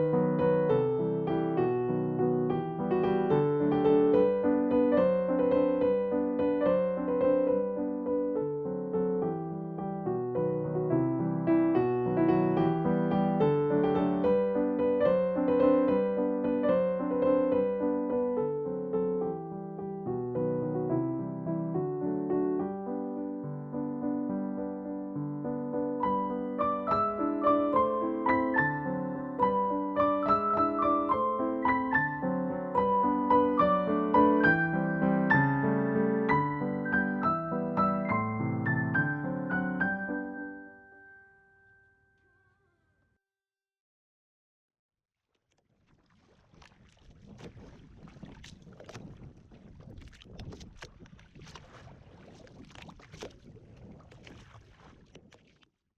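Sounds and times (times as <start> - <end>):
low rumble of wind and water: 0.0 - 40.4, 45.5 - 55.8
gentle piano melody: 0.0 - 42.4
water splashing against boat hull: 45.4 - 55.8.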